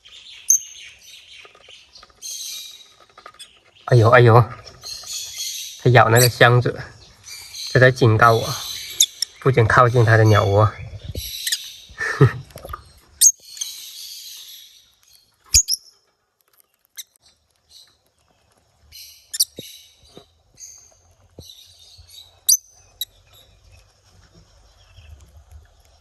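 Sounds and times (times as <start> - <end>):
parrot squeaky chirps: 4.9 - 6.4, 8.6 - 9.4, 11.2 - 11.8, 15.5 - 15.8, 19.2 - 19.7.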